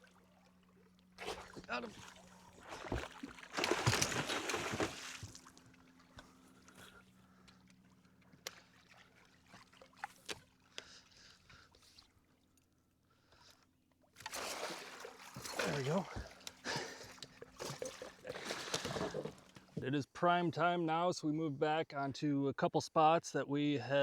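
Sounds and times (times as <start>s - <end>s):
faint steady hum: 0.0s - 24.0s
fish splashing at surface: 1.2s - 5.6s, 14.2s - 17.0s, 17.6s - 19.6s.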